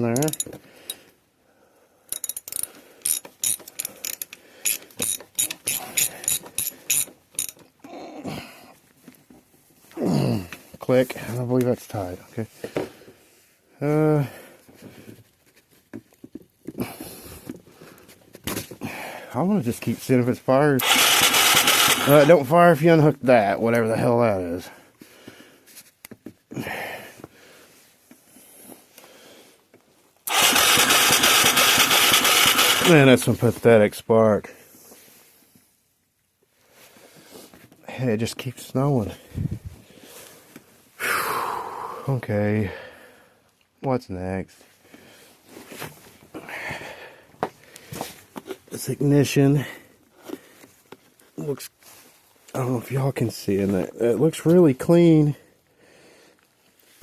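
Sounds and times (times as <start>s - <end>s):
ratchet wrench clicking: 0.2s - 0.5s, 2.1s - 7.6s, 20.8s - 22.4s, 30.3s - 33.1s
engine starter cranking: 20.8s - 22.4s, 30.3s - 33.3s.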